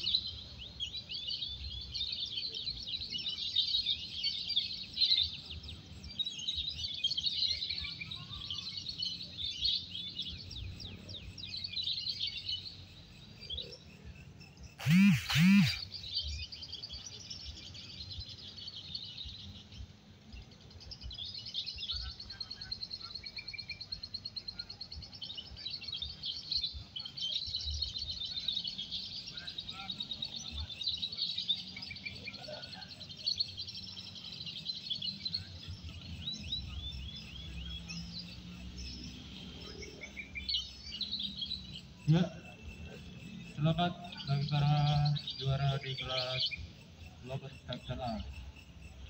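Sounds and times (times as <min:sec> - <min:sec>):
songbirds chirping and trilling: 0:00.0 - 0:49.0
loud voice: 0:14.8 - 0:15.8.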